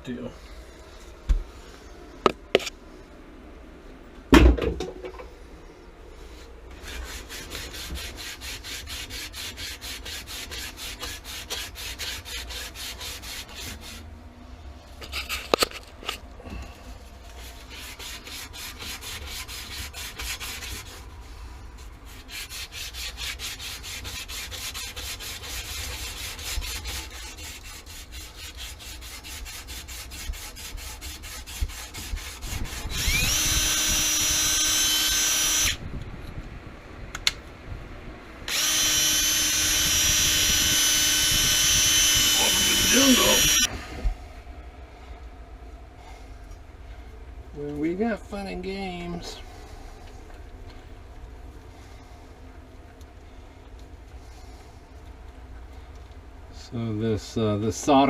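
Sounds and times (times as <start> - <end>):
pipe being scrubbed: 6.7 - 14.1, 17.2 - 35.8, 38.5 - 43.7.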